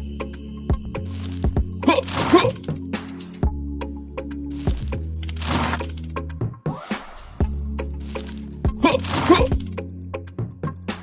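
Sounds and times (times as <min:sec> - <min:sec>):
music with deep bass: 0:07.4 - 0:08.8.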